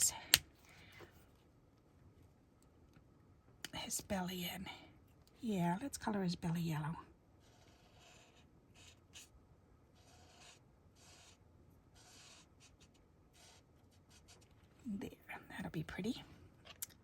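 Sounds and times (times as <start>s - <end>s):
marker nib rubbing on cardstock: 7.4s - 9.3s, 10.0s - 14.6s.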